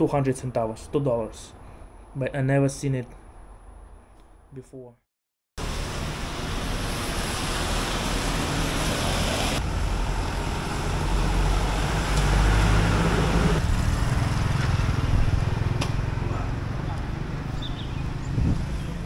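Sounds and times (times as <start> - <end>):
vehicles passing: 5.6 - 19.0.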